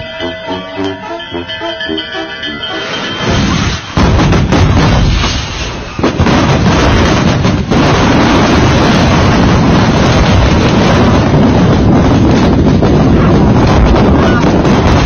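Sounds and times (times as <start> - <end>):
firework blasts: 3.0 - 15.0
loud rumble of fireworks: 3.2 - 15.0.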